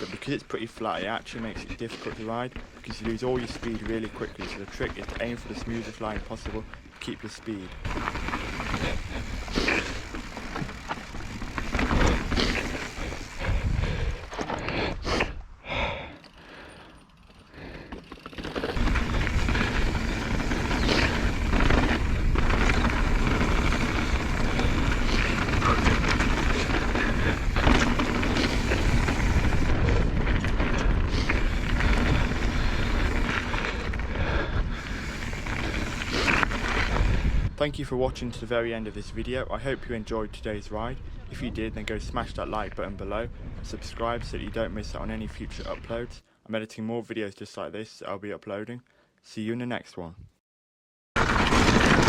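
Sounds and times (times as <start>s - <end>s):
bike tyres rumbling over rock: 0.0s - 15.0s, 17.5s - 37.6s, 51.2s - 52.0s
bike clattering: 1.4s - 14.7s, 16.3s - 34.1s, 34.7s - 37.3s, 51.2s - 52.0s.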